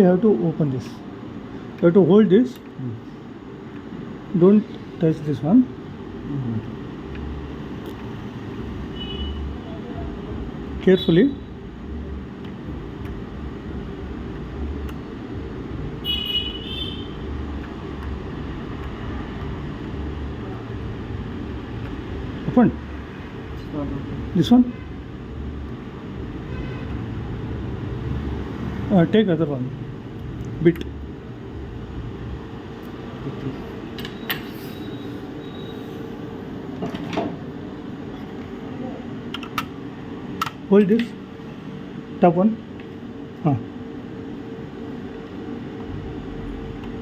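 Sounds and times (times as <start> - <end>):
low mechanical hum: 0.0 - 47.0
road traffic rumble: 0.0 - 47.0
high-pitched vehicle horn toots: 8.9 - 9.5, 16.0 - 17.2.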